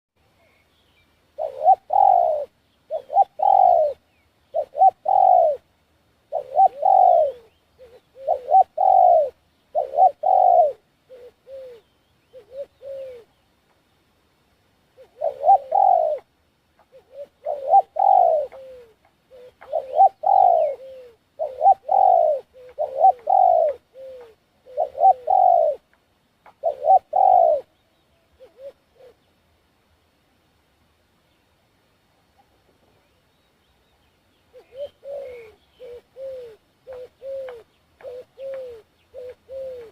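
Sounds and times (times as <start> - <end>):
dove cooing: 1.4 - 13.4, 14.9 - 29.3, 34.5 - 39.9.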